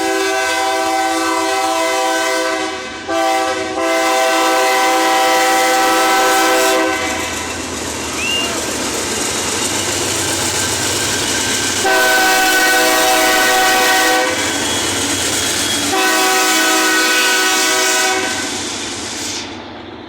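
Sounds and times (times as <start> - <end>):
locomotive air horn: 0.0 - 7.4, 11.8 - 14.8, 15.9 - 18.6
train rolling rumble and wheels: 0.0 - 20.0.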